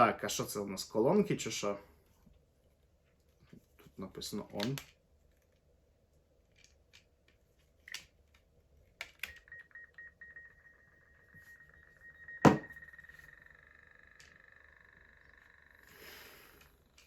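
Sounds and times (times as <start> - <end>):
loud pop: 12.5 - 12.7.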